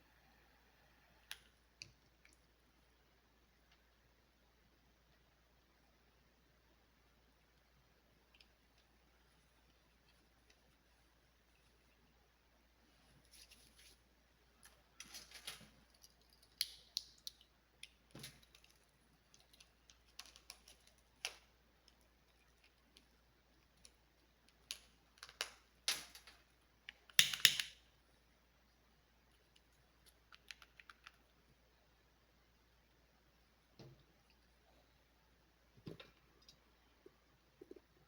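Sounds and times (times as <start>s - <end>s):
rustling handling noises: 12.8s - 16.0s.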